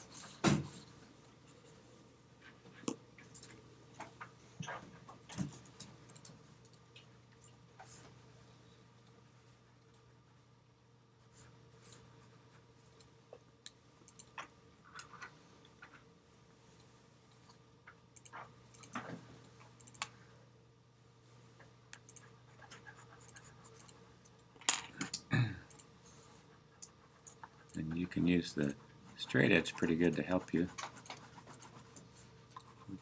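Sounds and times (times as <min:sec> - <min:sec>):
faint steady hum: 0:00.0 - 0:33.0
pencil scratching on paper: 0:29.1 - 0:32.0.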